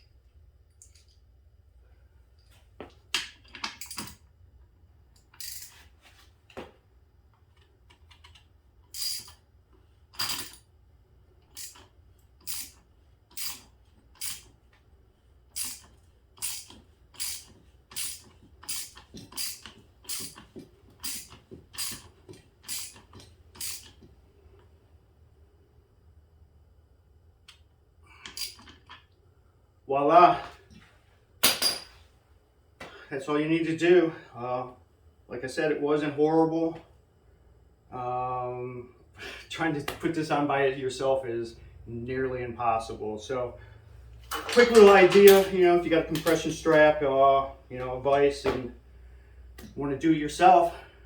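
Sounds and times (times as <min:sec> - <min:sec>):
metal ratchet clicking: 0:05.2 - 0:05.8, 0:08.1 - 0:09.4, 0:10.2 - 0:10.6, 0:11.5 - 0:14.5, 0:15.5 - 0:24.0, 0:28.3 - 0:29.0.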